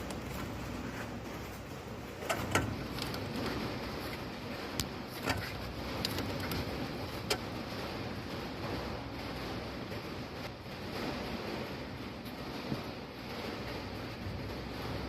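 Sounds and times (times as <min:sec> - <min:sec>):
steady running noise: 0:00.0 - 0:15.0
drive shaft clicks and knocks: 0:02.1 - 0:07.6.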